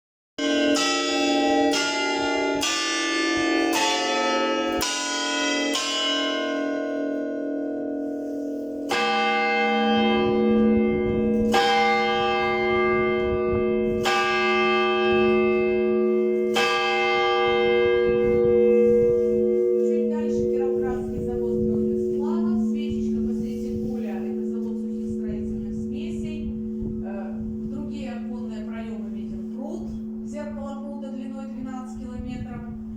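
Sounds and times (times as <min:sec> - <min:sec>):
higher bells ringing: 0:00.4 - 0:32.9
deep bell struck: 0:08.8 - 0:32.9.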